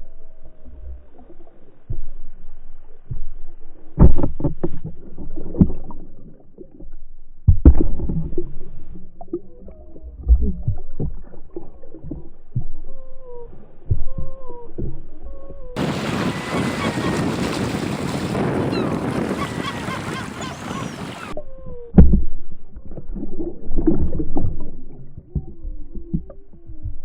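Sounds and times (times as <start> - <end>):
muffled underwater knocks and sloshing: 0.0 - 27.0.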